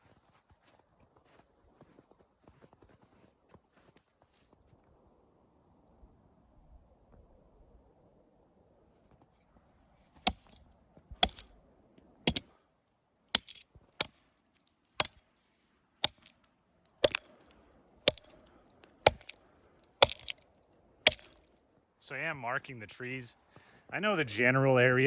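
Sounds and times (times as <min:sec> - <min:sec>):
hatchet chopping into tree trunk: 0:10.3 - 0:10.6, 0:11.2 - 0:11.5, 0:13.4 - 0:13.6, 0:15.0 - 0:15.2, 0:16.0 - 0:16.4, 0:17.0 - 0:17.3, 0:18.1 - 0:18.3, 0:19.1 - 0:19.4, 0:20.0 - 0:20.4, 0:21.1 - 0:21.4.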